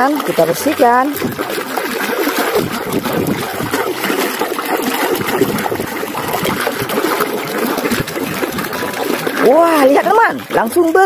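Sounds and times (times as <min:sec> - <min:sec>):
water running and splashing: 0:00.0 - 0:11.0.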